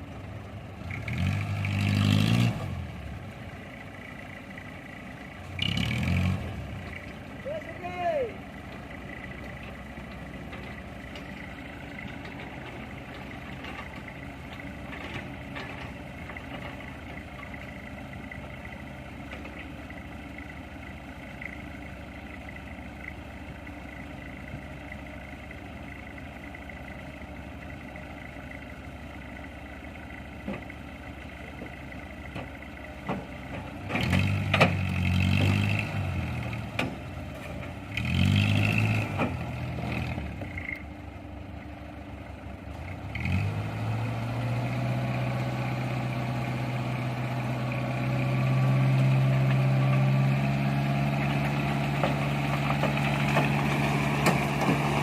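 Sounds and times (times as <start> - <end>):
heavy machine engine revving: 0.8 - 3.1, 5.4 - 7.1, 33.8 - 40.8, 42.7 - 55.0.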